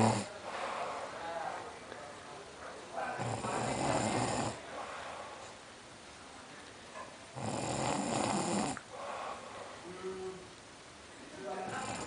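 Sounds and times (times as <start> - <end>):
quiet breathing: 0.0 - 5.8, 7.8 - 10.4
person snoring: 3.2 - 4.6, 7.4 - 8.8, 11.7 - 12.0.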